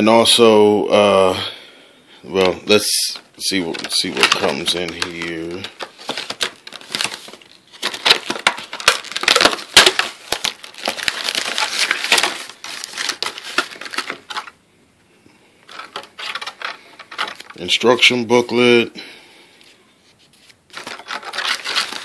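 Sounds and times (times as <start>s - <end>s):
packaging rustling and crinkling: 3.1s - 14.6s, 15.6s - 18.1s, 20.1s - 22.0s.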